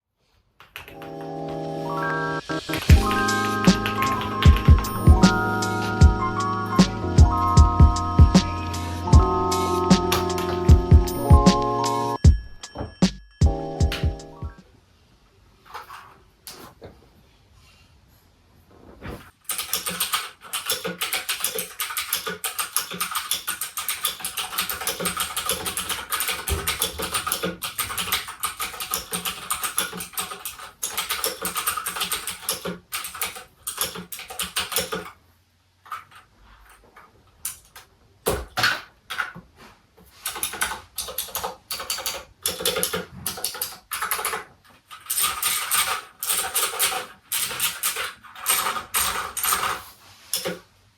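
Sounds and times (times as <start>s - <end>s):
mechanical keyboard typing: 0.6s - 1.7s, 2.7s - 12.0s, 19.4s - 35.2s, 40.2s - 50.6s.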